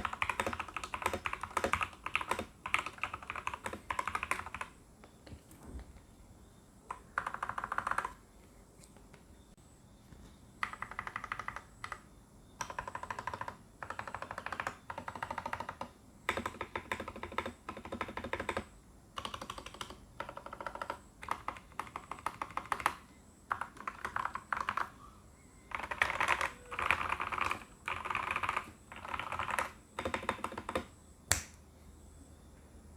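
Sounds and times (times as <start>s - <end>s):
mechanical keyboard typing: 0.0s - 4.8s, 6.9s - 8.2s, 10.6s - 12.0s, 12.6s - 25.0s, 25.7s - 31.4s.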